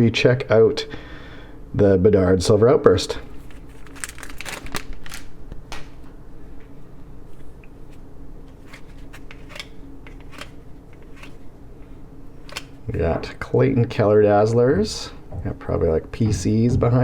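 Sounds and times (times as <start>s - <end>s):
wrapper crinkling: 3.3s - 6.0s
cards rustling and clicking: 3.3s - 6.1s, 7.3s - 12.8s.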